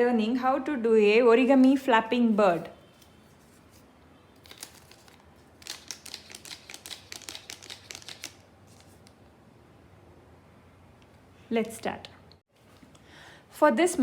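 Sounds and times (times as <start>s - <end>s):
paper crinkling: 2.9s - 9.2s.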